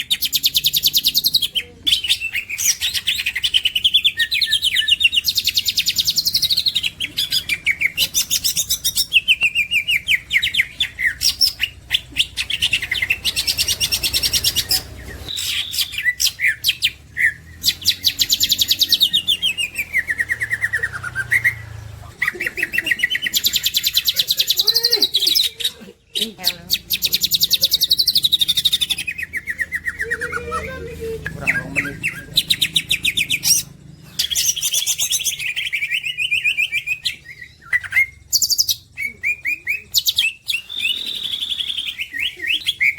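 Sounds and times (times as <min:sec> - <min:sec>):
bird singing fast trills: 0:00.0 - 0:42.9.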